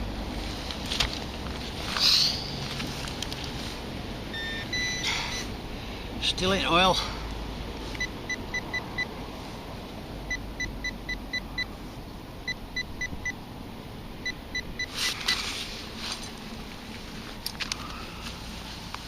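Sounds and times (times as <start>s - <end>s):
soil scraping: 0.3s - 3.9s, 14.9s - 18.9s
pinpointer high beeps: 4.3s - 5.5s.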